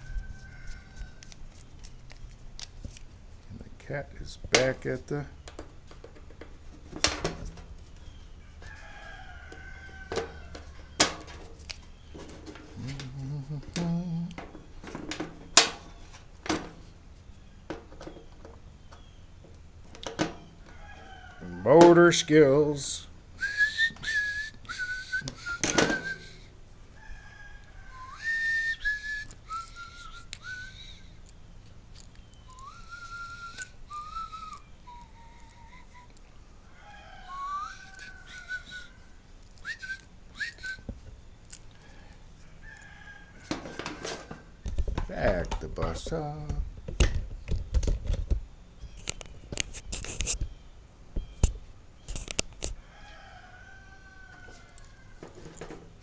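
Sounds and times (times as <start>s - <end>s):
faint steady hum: 0.0s - 56.0s
person whistling: 23.4s - 26.5s, 28.0s - 31.2s, 32.5s - 36.1s, 37.3s - 38.9s, 39.6s - 40.9s
hand tools clicking and tapping: 25.2s - 26.0s, 43.5s - 48.3s.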